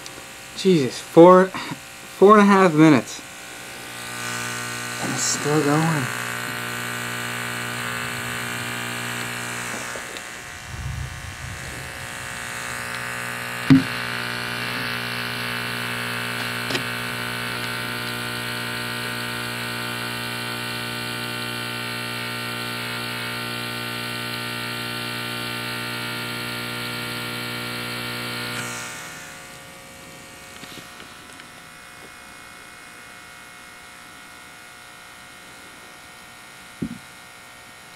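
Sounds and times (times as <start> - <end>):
tweeter buzzing mains hum: 0.0 - 37.9
sharp knock: 13.7 - 14.0.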